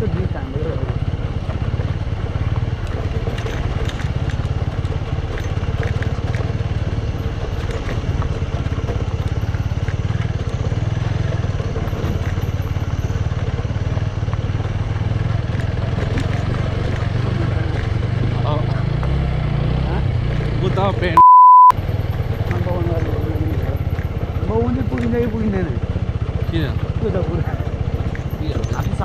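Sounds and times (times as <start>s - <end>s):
motorbike engine running: 0.0s - 21.2s, 21.8s - 29.0s
rattling clicks and knocks: 0.9s - 13.6s, 14.2s - 19.2s, 22.4s - 25.4s.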